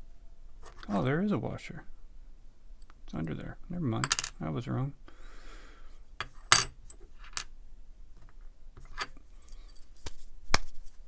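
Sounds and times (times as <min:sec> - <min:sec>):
small metal parts clinking: 0:04.0 - 0:04.4.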